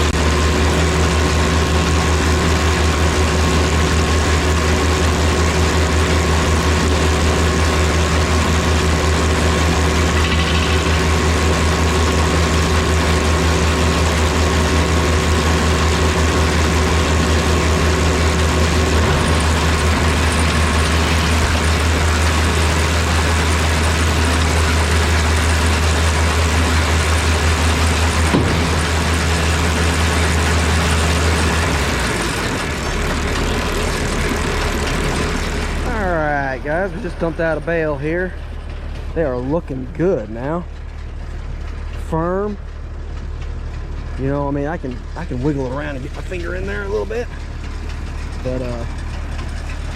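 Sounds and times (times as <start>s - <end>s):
baler machinery turning: 0.0s - 49.9s
tractor diesel engine running: 0.0s - 49.9s
sharp knock: 28.3s - 28.9s.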